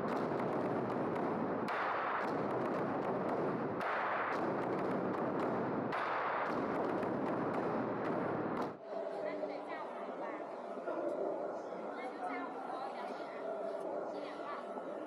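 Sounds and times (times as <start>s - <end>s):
large drums rolling: 0.0s - 8.8s.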